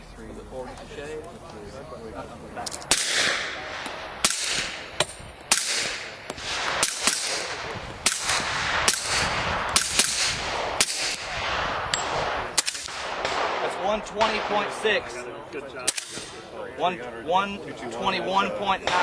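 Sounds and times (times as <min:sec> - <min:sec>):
suppressed gunshots with echo: 0:02.8 - 0:14.8, 0:15.8 - 0:16.4.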